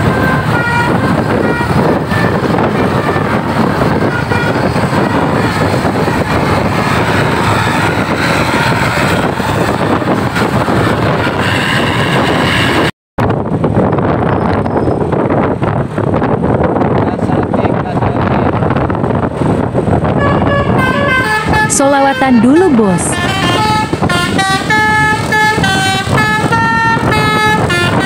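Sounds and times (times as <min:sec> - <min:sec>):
bus passing close by: 0:00.0 - 0:14.3, 0:18.7 - 0:28.0
bus horn playing short notes: 0:00.3 - 0:05.5, 0:20.2 - 0:22.4, 0:23.0 - 0:28.0.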